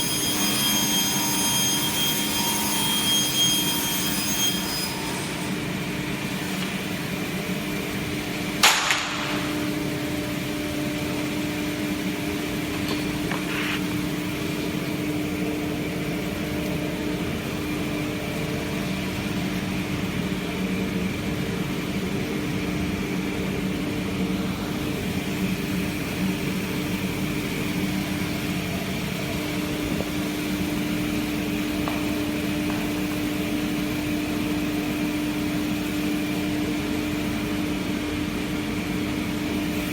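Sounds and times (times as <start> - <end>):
panel saw humming: 0.0 - 16.3
sharp knock: 8.6 - 9.5.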